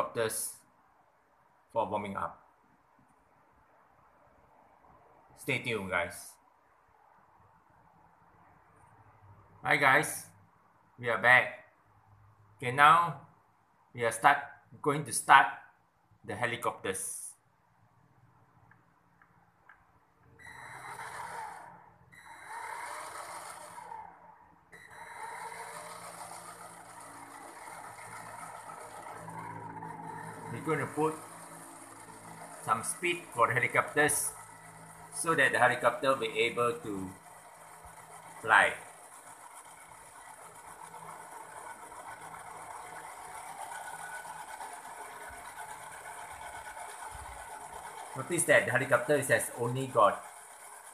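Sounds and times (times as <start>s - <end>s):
model helicopter motor whining: 20.4s - 50.9s.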